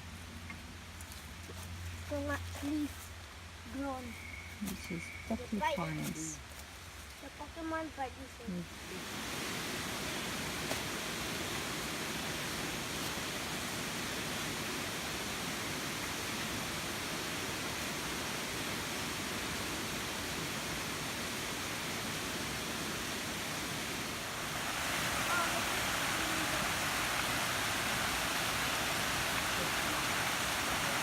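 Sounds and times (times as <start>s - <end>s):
waterfall rushing: 8.8s - 31.0s.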